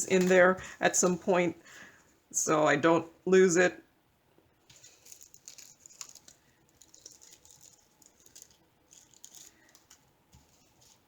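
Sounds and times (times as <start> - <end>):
plastic packaging crinkling: 4.7 - 11.0
small metal parts ticking: 5.0 - 10.0.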